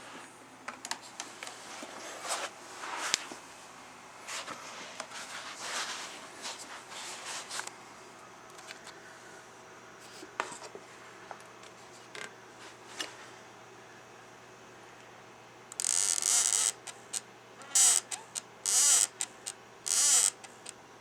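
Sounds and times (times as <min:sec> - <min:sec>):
rc car creaking and squeaking: 0:17.6 - 0:20.7.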